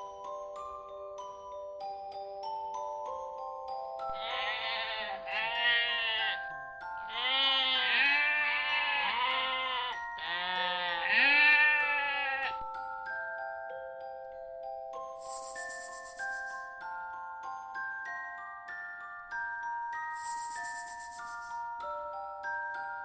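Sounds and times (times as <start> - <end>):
glockenspiel background music: 0.0 - 23.0
farm animal bleating: 4.1 - 12.6.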